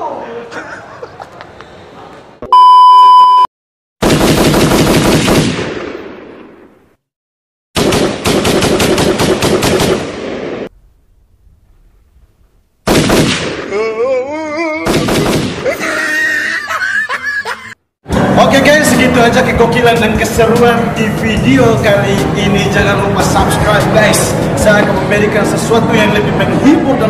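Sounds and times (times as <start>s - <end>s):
machine-gun fire bursts: 4.0s - 6.0s, 7.8s - 10.7s, 12.9s - 13.7s, 14.9s - 15.6s.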